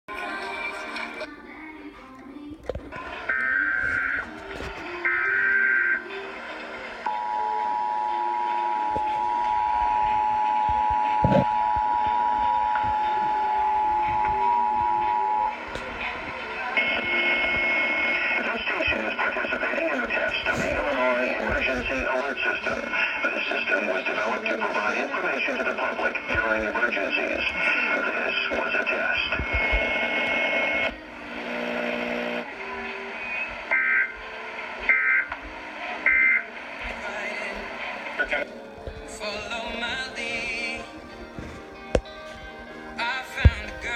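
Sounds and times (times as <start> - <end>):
steady low tones: 2.4 - 43.9
two-tone attention signal: 7.0 - 15.8, 16.6 - 18.9, 31.5 - 35.3, 36.1 - 36.5.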